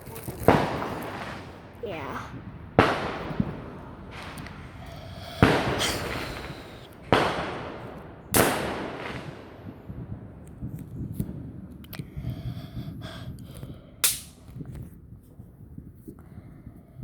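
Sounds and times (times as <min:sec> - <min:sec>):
fireworks bangs with echo: 0:00.0 - 0:12.6, 0:14.0 - 0:14.7.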